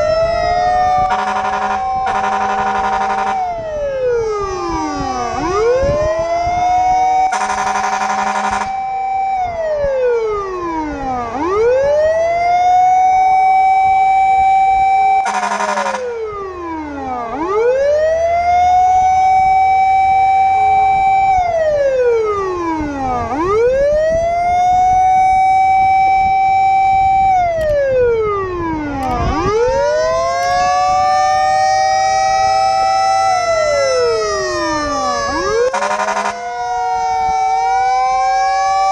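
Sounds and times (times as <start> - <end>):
fire truck siren wailing: 0.0 - 38.9
fire truck horn blast: 1.0 - 3.6, 7.3 - 8.8, 15.2 - 16.2, 35.6 - 36.6.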